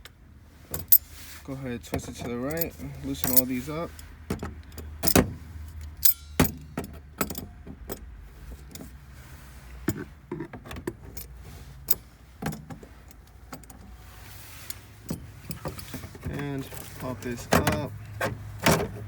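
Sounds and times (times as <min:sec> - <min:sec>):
metal tool clicks and clinks: 0:04.6 - 0:07.4.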